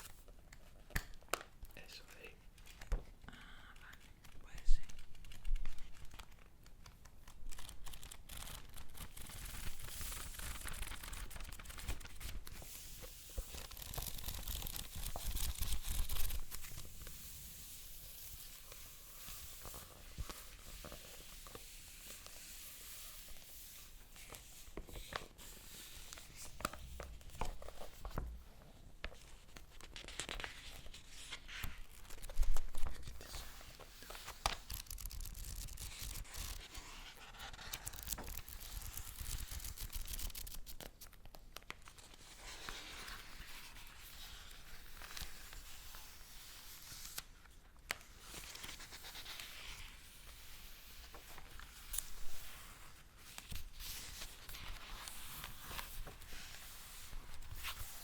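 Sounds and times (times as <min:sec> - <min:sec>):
paper crinkling and tearing: 0:03.8 - 0:17.2, 0:29.3 - 0:41.2.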